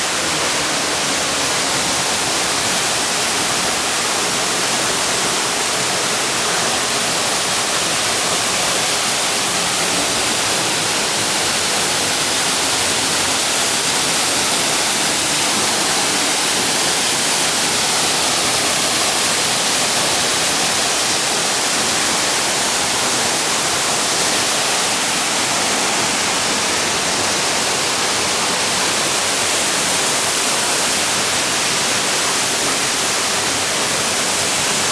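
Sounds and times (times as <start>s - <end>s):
waterfall rushing: 0.0s - 34.9s.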